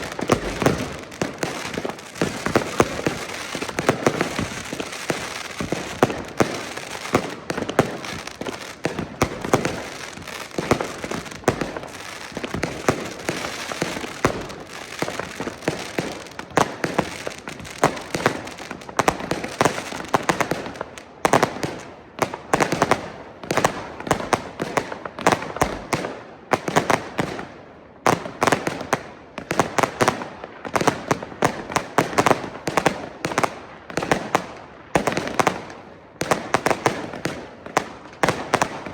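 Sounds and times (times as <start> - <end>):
fireworks bangs and crackling: 0.0 - 38.9.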